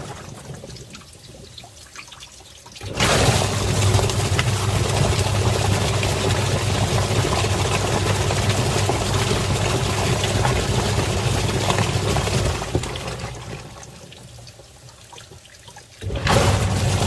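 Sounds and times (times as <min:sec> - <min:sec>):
water churning in tub: 0:00.0 - 0:17.0
washing machine motor humming: 0:02.8 - 0:13.8, 0:16.0 - 0:17.0.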